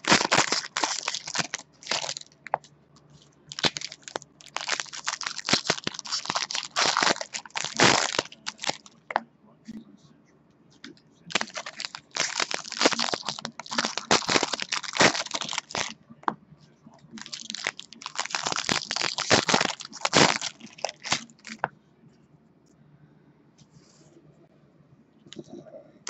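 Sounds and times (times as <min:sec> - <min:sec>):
foil wrappers crinkling and tearing: 0:00.0 - 0:02.6, 0:03.5 - 0:09.0, 0:11.3 - 0:16.0, 0:17.2 - 0:21.7.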